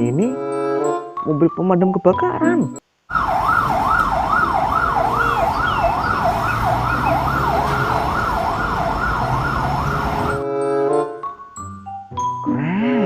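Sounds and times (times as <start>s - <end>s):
fire engine siren wailing: 3.1s - 10.4s.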